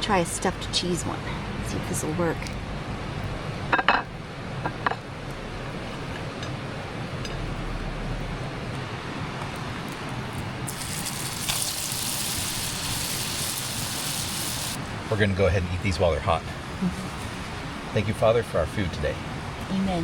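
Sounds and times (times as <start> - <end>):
dough frying: 9.4 - 14.8.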